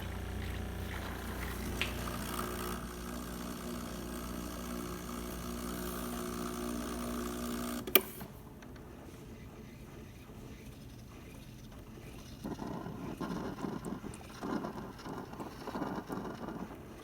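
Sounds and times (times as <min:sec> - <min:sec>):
espresso machine pump humming: 0:00.0 - 0:08.6, 0:09.3 - 0:17.0.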